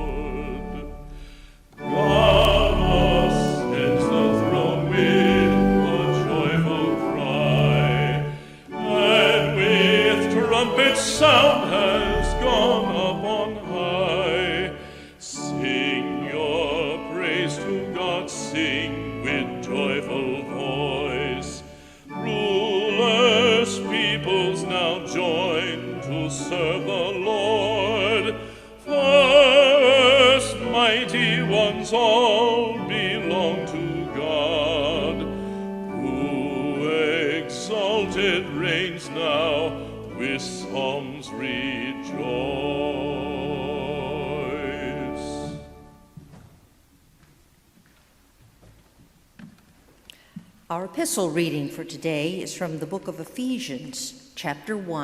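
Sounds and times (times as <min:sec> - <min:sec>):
classical singing with vibrato: 0:00.0 - 0:46.8.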